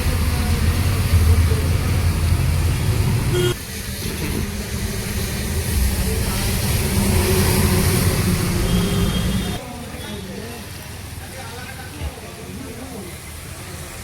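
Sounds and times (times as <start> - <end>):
highway traffic rumble: 0.0 - 14.0
horn-like tone: 3.3 - 3.6, 8.6 - 9.6.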